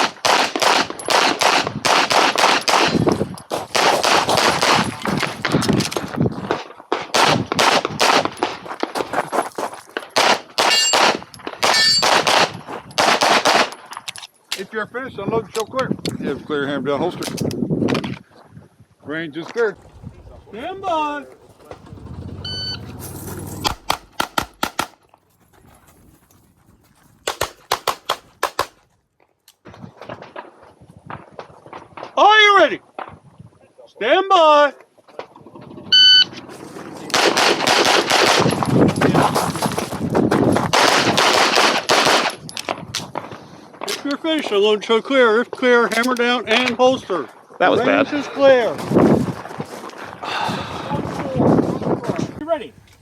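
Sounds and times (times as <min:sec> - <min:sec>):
handgun shots: 0:23.7 - 0:25.0.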